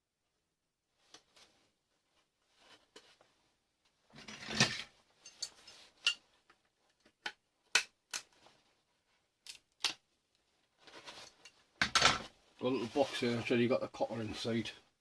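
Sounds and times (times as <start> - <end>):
parts clattering: 4.1 - 7.3, 10.9 - 12.3.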